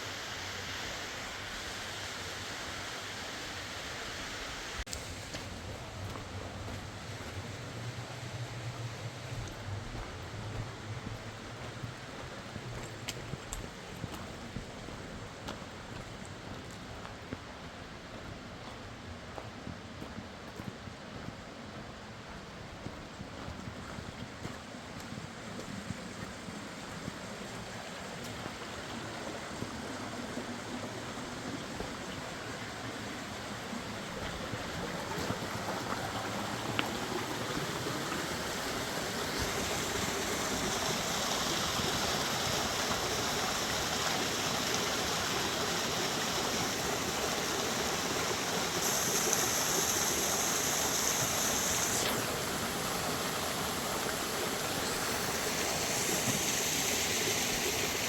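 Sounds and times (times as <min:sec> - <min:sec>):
river rushing: 0:26.6 - 0:58.0.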